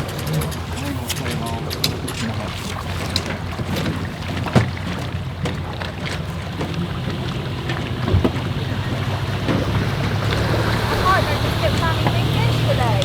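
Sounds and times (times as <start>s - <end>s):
wind on microphone: 6.4s - 13.0s.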